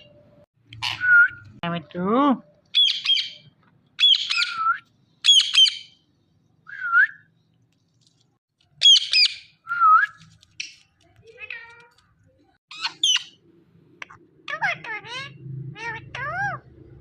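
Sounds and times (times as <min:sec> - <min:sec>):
parakeet squawking: 0:02.7 - 0:04.6, 0:05.2 - 0:06.0, 0:08.8 - 0:09.6, 0:12.7 - 0:13.4, 0:14.4 - 0:16.7.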